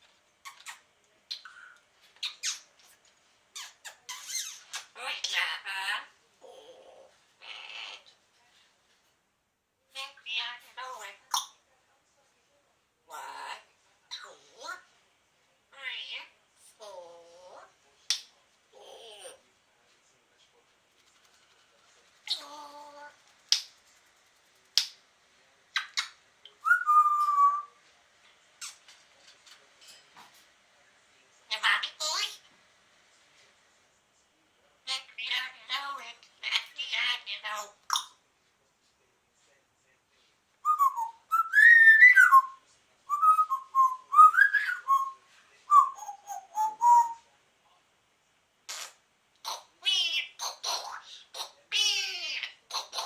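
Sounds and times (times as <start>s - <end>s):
parrot whistling: 26.6s - 27.7s, 40.6s - 47.2s.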